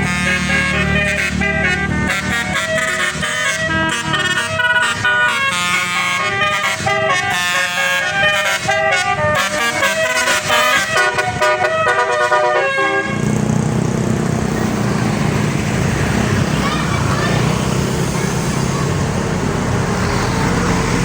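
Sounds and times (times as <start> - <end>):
multi-tone bus horn tune: 0.0 - 13.8
street noise: 0.0 - 21.0.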